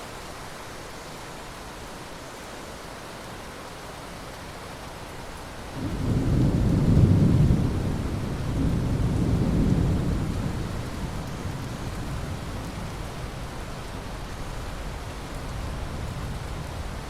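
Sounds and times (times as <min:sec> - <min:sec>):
steady rain: 0:00.0 - 0:17.0
thunder rumbling: 0:05.8 - 0:13.7.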